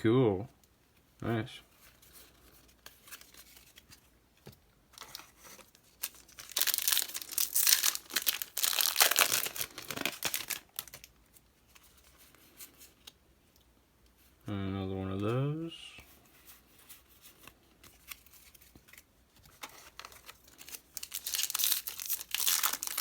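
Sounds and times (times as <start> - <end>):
foil wrapper tearing and crinkling: 5.9 - 11.1, 19.9 - 23.0.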